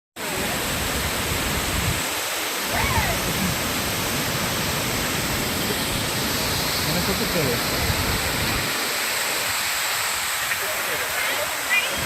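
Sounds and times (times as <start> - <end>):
waterfall rushing: 0.2 - 12.0.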